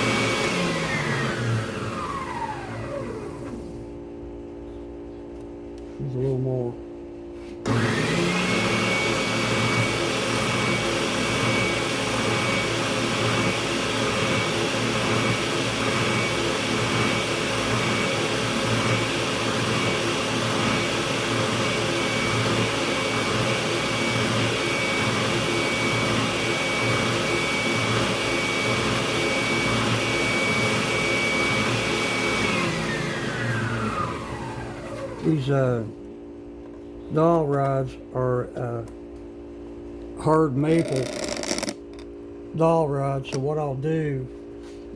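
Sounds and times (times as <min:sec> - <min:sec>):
power sander whining: 0:00.0 - 0:03.8, 0:07.6 - 0:35.5, 0:40.7 - 0:42.1.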